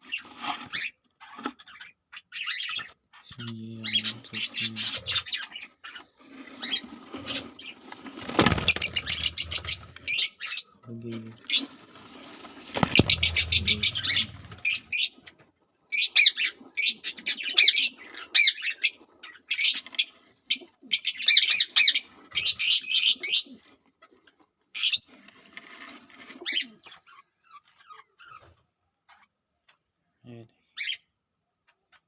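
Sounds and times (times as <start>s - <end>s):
lovebirds chirping: 0.0s - 15.3s.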